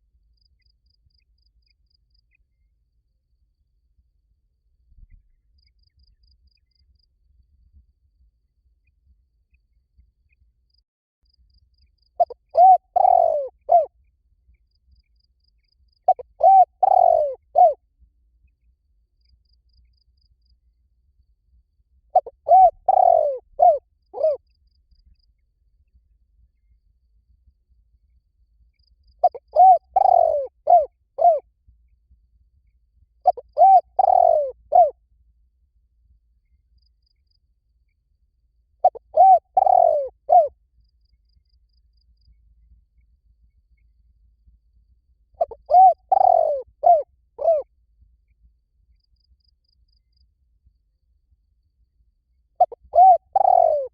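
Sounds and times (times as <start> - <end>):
dove cooing: 12.2 - 13.9, 16.1 - 17.8, 22.2 - 24.4, 29.2 - 31.4, 33.2 - 35.0, 38.8 - 40.6, 45.4 - 47.7, 52.6 - 53.9.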